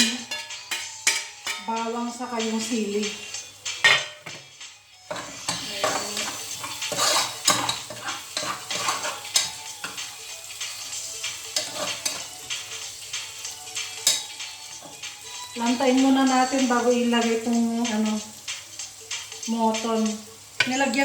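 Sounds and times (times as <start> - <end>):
garlic and chili sizzling in oil: 0.0 - 21.0
utensil scraping and clicking on pan: 5.1 - 10.1, 11.3 - 12.3, 14.0 - 15.0.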